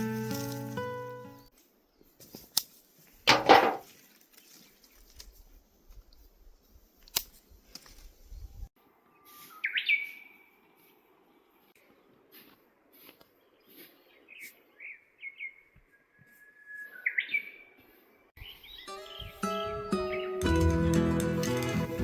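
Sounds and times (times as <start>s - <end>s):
bird call with whistled note: 9.2s - 10.3s, 15.4s - 17.6s.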